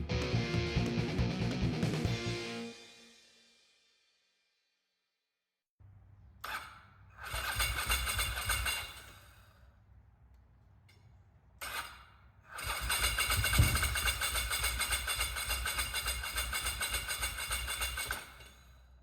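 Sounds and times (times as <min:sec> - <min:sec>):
motorcycle engine cranking and starting: 0:07.2 - 0:09.0, 0:11.6 - 0:18.5.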